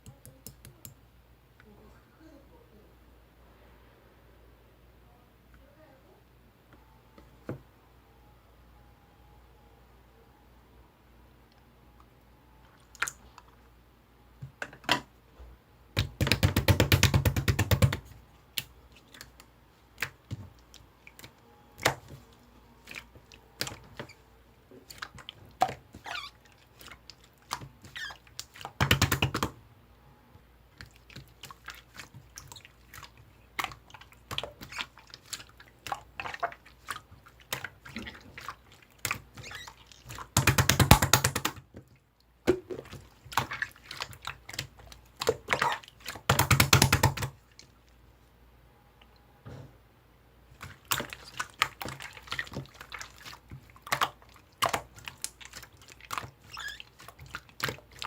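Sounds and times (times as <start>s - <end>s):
slime rapid crackling: 30.8s - 41.6s, 43.0s - 47.3s.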